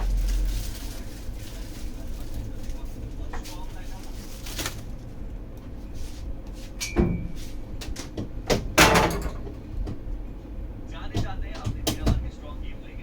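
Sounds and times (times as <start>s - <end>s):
steady low hum: 0.0s - 13.0s
objects knocking and clattering: 7.8s - 10.0s.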